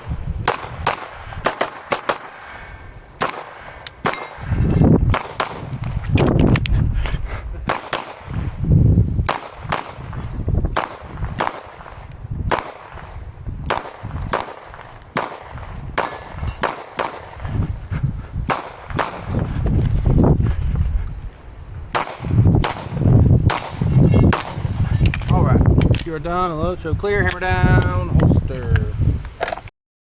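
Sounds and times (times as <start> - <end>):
pistol shots: 0.4 - 2.6, 3.2 - 4.5, 5.1 - 6.3, 7.6 - 8.4, 9.2 - 10.1, 10.7 - 13.1, 13.7 - 17.4, 18.5 - 19.3, 21.9 - 24.7.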